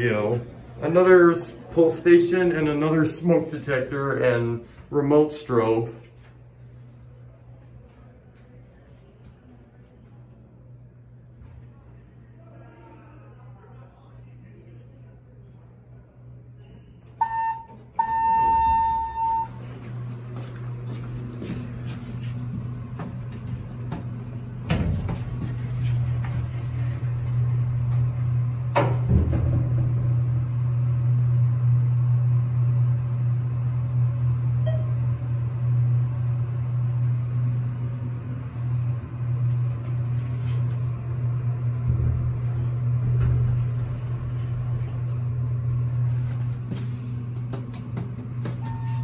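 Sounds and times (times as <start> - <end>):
elevator humming: 14.2 - 49.0.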